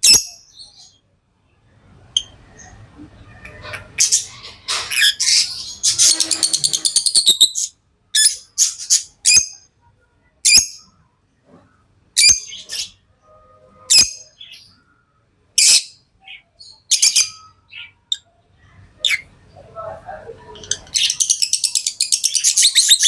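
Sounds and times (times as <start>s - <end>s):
lovebirds chirping: 2.1s - 9.7s, 15.6s - 23.0s.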